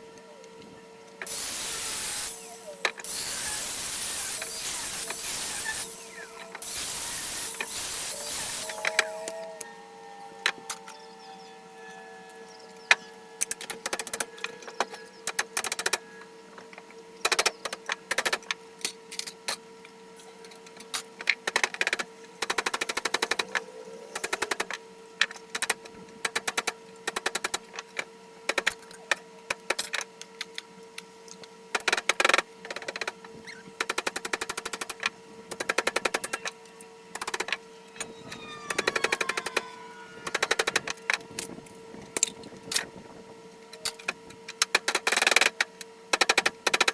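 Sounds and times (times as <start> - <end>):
steady hum: 0.6 - 15.2, 22.6 - 25.0
pneumatic tool chattering: 1.2 - 9.2
falling squeals: 1.8 - 15.2, 22.8 - 24.7, 37.9 - 43.3.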